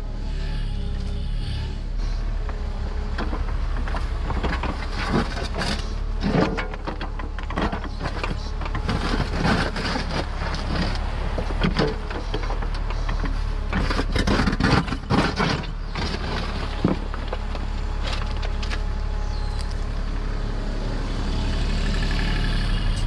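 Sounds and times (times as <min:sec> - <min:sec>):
excavator engine running: 0:00.0 - 0:23.0
bucket scraping soil and stones: 0:03.0 - 0:19.7.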